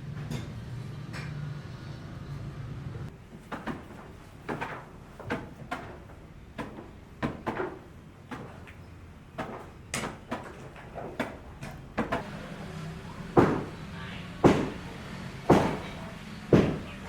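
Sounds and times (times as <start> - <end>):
hammering: 3.1 - 17.0.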